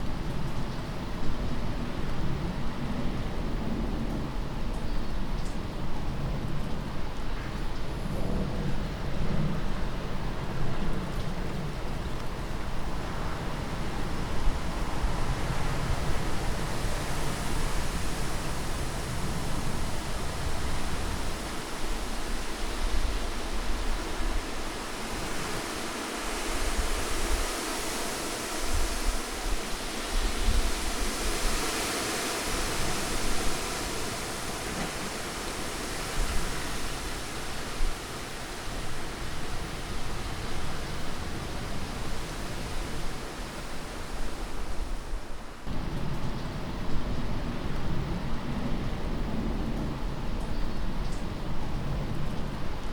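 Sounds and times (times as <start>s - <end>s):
rushing wind: 0.0s - 52.9s.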